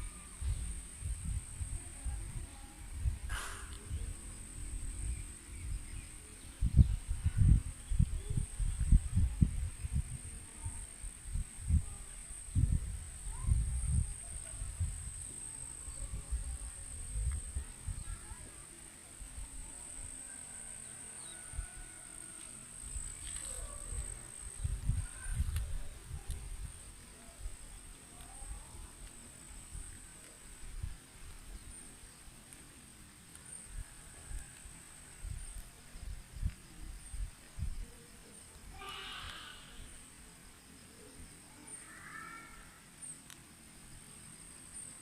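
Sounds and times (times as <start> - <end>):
wind buffeting microphone: 0.0 - 18.5, 22.8 - 31.7
faint chirps: 0.0 - 45.0
high-pitched insect chorus: 0.0 - 45.0.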